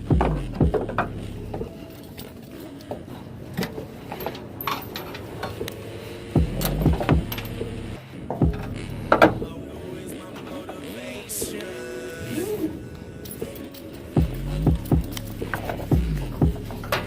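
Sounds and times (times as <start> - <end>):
metal buckles and hooks clinking: 0.8 - 5.8, 6.5 - 7.8.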